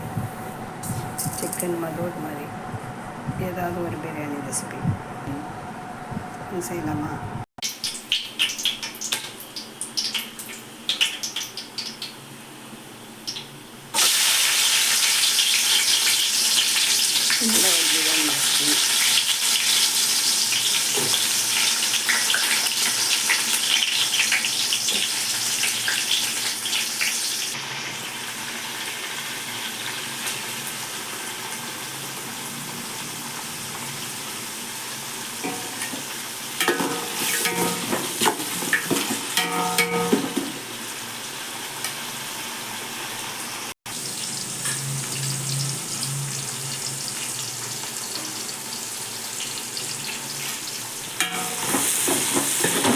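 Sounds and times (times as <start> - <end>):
oil sizzling in a pan: 7.6 - 52.9
utensil knocking and scraping pan: 35.4 - 40.6, 51.2 - 52.9.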